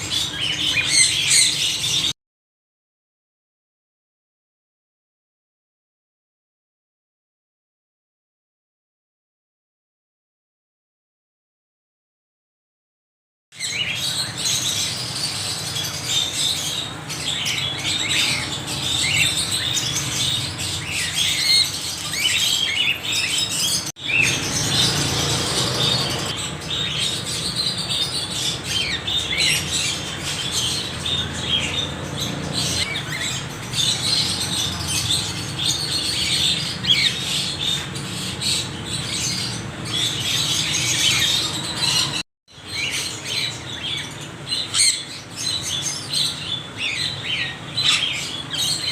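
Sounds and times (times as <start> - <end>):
parrots chattering and squawking: 0.0 - 2.1, 13.6 - 48.9.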